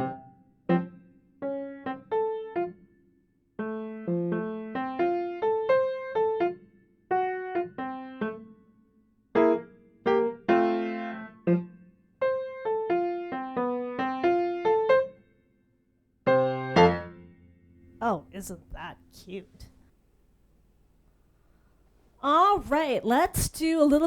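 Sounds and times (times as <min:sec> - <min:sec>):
piano played slowly: 0:00.0 - 0:02.9, 0:03.6 - 0:15.2, 0:16.2 - 0:17.9.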